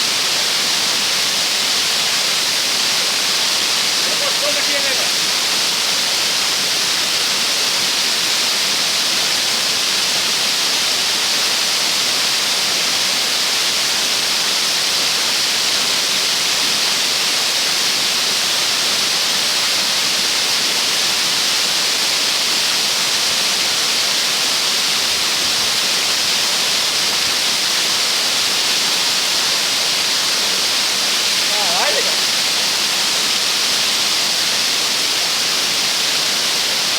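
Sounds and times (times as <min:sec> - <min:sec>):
waterfall rushing: 0:00.0 - 0:36.9.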